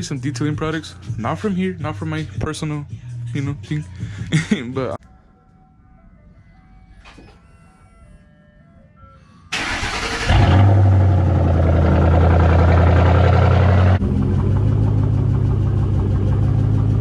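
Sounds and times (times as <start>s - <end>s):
starter motor cranking: 9.6s - 10.8s
car engine idling with deep rumble: 9.8s - 17.0s.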